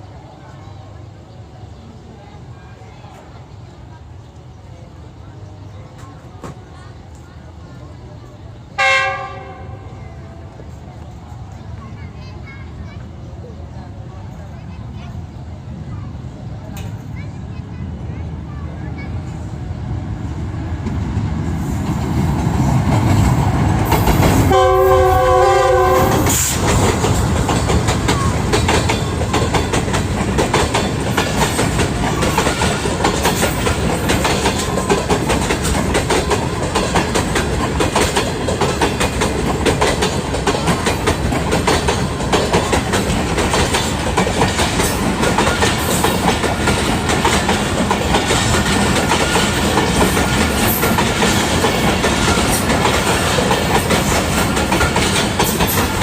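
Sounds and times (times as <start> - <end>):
train horn: 8.8 - 10.0, 24.5 - 26.6
train wheels clickety-clack: 20.8 - 56.0.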